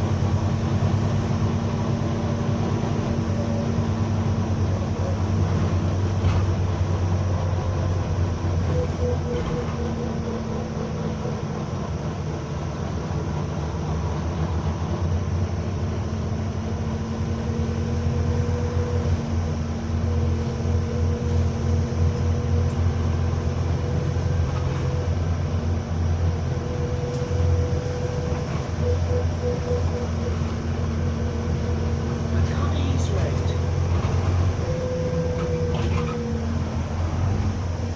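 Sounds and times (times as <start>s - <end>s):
bus engine droning: 0.0s - 37.9s.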